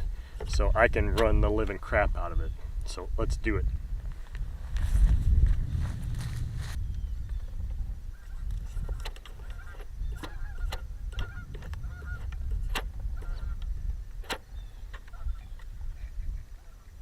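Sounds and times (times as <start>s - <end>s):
steady low rumble: 0.0s - 17.0s
geese honking: 8.2s - 12.5s, 13.1s - 13.6s
sharp clicks: 8.4s - 15.7s.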